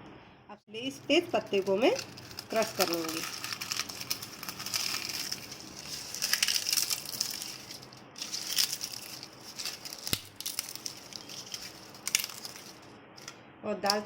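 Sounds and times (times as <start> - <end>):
dry leaves crackling: 0.8 - 13.3.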